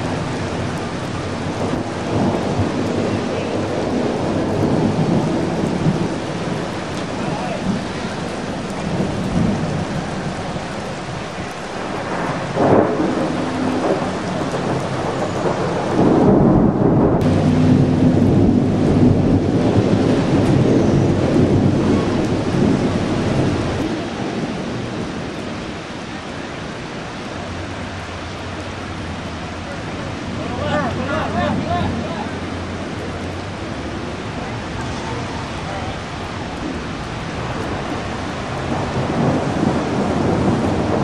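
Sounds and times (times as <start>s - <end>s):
heavy rain pouring: 0.0s - 41.0s
low rumble: 16.0s - 24.8s.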